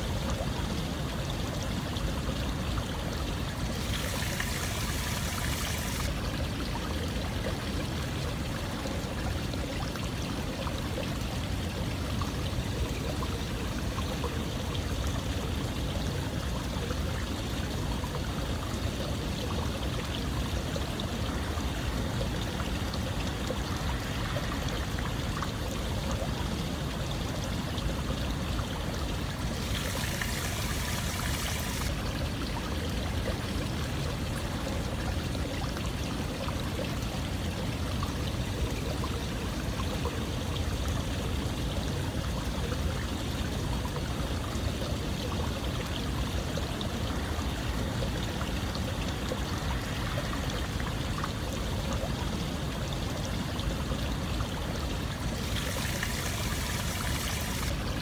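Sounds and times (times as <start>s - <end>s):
water flowing steadily: 0.0s - 58.0s.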